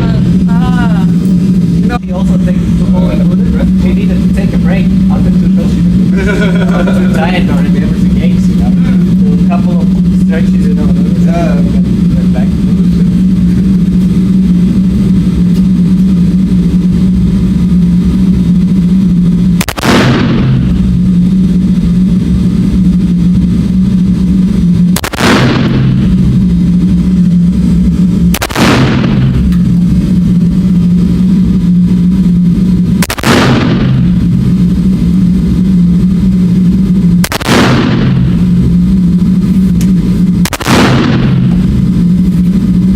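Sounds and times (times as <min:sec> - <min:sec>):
loud steady low hum: 0:00.0 - 0:42.9
gunshots: 0:19.6 - 0:20.8, 0:24.9 - 0:26.3, 0:28.3 - 0:29.5, 0:33.0 - 0:34.3, 0:37.2 - 0:38.6, 0:40.4 - 0:41.7.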